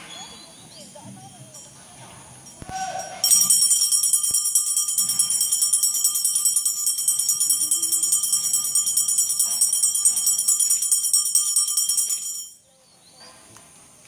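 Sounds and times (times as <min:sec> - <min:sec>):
bell ringing rapidly: 0:02.5 - 0:12.6.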